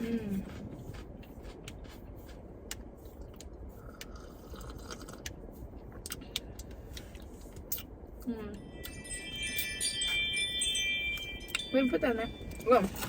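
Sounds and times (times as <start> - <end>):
chewing and crunching food: 0.0 - 8.2
low background rumble: 0.0 - 13.0.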